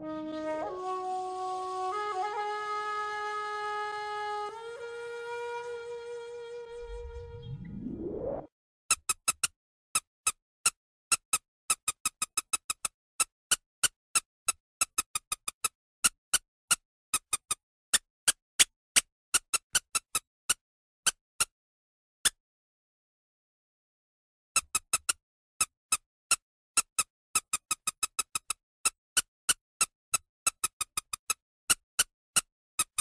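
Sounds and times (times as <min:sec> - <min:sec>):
horn-like tone: 0:00.0 - 0:07.7
rising pitch sweep: 0:04.2 - 0:08.5.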